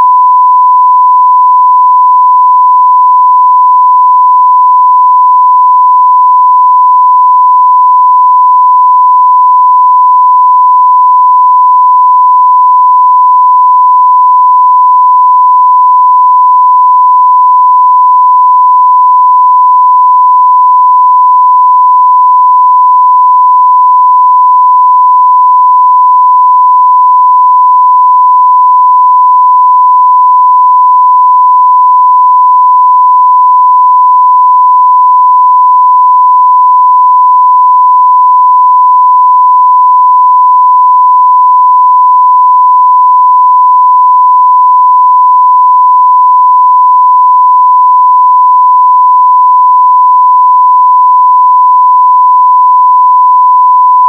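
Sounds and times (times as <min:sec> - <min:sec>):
sine-wave test tone: 0:00.0 - 0:54.0.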